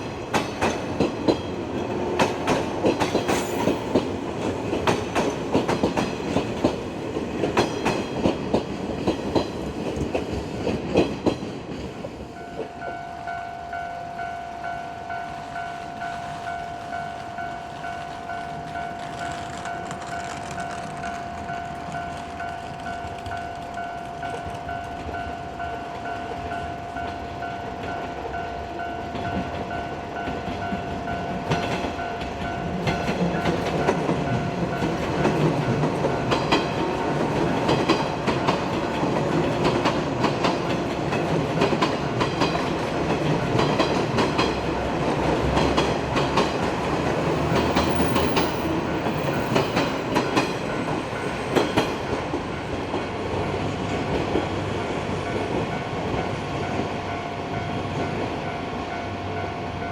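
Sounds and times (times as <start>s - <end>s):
train wheels clicking over rail joints: 0.0s - 13.0s, 29.1s - 56.6s
level crossing warning bell: 12.3s - 53.2s.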